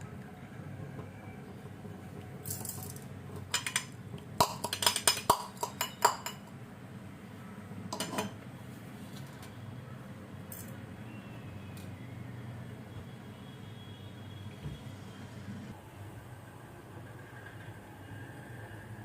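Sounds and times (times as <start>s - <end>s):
metal utensils clinking: 2.4s - 6.5s, 7.9s - 8.4s.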